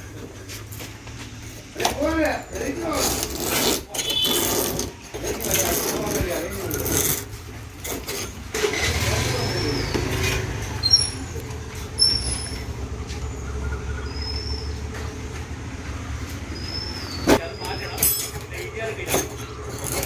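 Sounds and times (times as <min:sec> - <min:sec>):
low vehicle rumble: 0:06.5 - 0:20.0.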